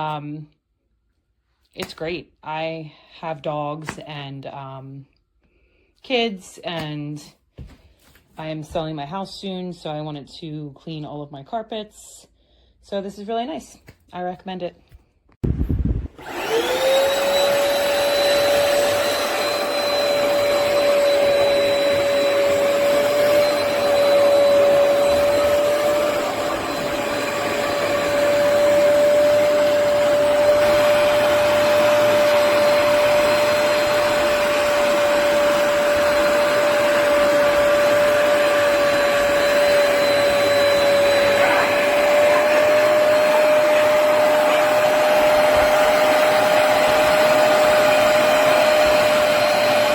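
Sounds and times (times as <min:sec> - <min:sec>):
carpet cleaner motor whine: 0:16.2 - 0:49.9.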